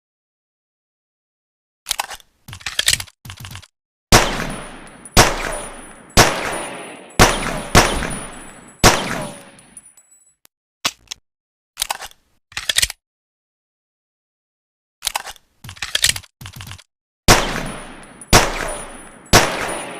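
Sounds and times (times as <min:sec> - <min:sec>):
pistol gunshots ringing: 0:04.1 - 0:09.8, 0:17.3 - 0:19.9.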